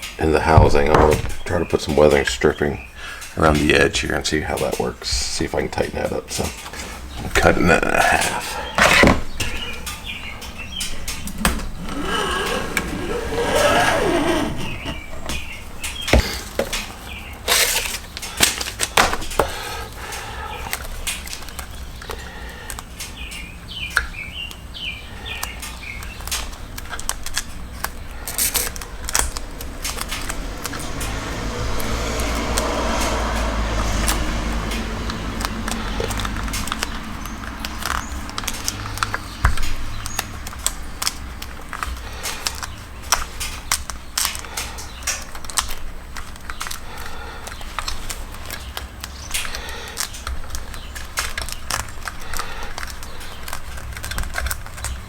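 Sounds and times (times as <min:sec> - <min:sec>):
hands clicking and rustling: 0:00.0 - 0:55.0
short squeaks: 0:10.8 - 0:16.6.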